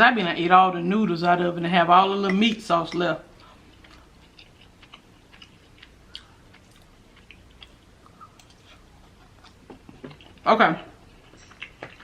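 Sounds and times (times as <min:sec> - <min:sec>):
person chewing food: 0:03.3 - 0:10.4, 0:11.0 - 0:12.0.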